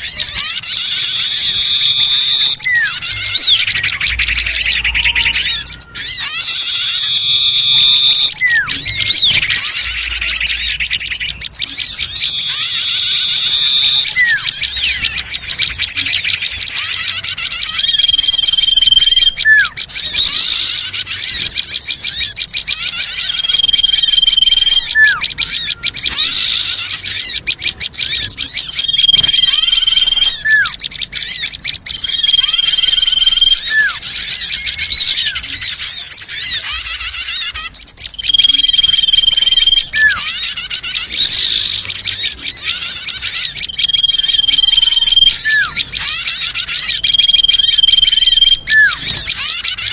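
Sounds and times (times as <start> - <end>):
steady high whistle: 0.0 - 11.0, 11.6 - 21.1, 23.0 - 27.4, 28.8 - 30.8, 32.0 - 35.5, 42.7 - 49.1
small birds chirping: 0.0 - 49.9.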